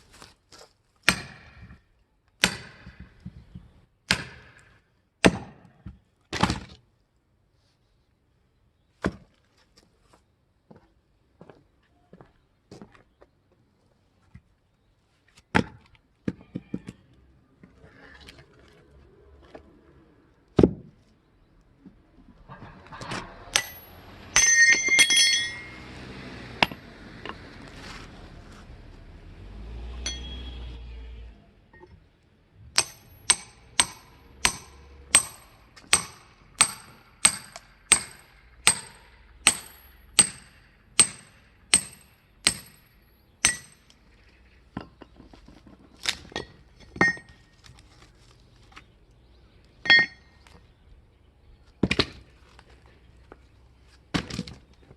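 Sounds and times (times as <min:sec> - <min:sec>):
metal-on-metal splitting blows: 0:22.4 - 0:27.4, 0:32.7 - 0:44.0
ringing clink: 0:23.5 - 0:25.9, 0:30.0 - 0:30.6, 0:46.9 - 0:47.4, 0:49.8 - 0:50.4.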